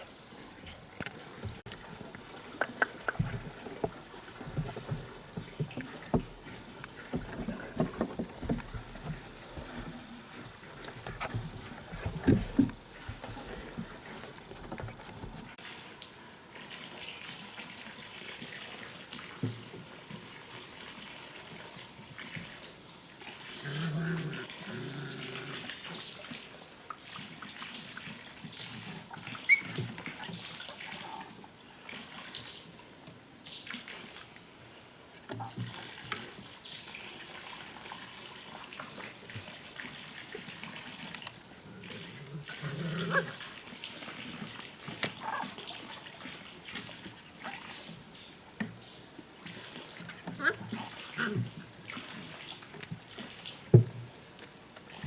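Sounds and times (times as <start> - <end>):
small knocks and taps: 2.6 - 10.0.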